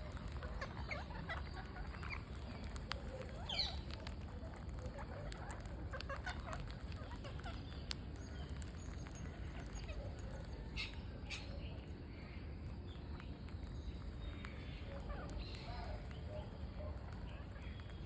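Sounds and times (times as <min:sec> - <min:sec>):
parrots squawking and chattering: 0:00.0 - 0:11.7, 0:14.5 - 0:16.2.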